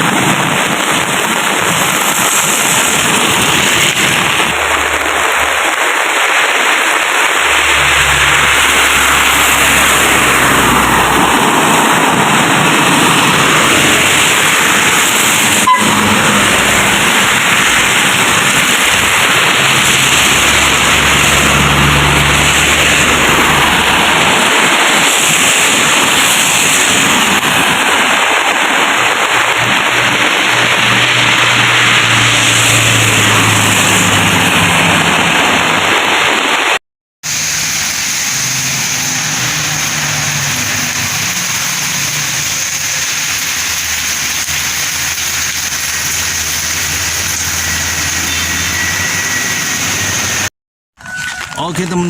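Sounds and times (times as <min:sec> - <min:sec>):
heavy rain pouring: 0:00.0 - 0:52.0
low hum: 0:07.4 - 0:11.7.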